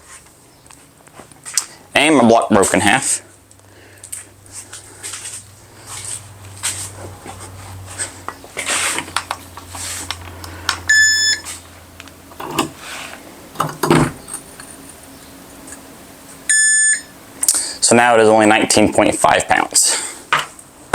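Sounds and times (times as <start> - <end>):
scuffling and handling noises: 4.1 - 10.4
digital scale beep: 10.9 - 11.4, 16.5 - 17.1.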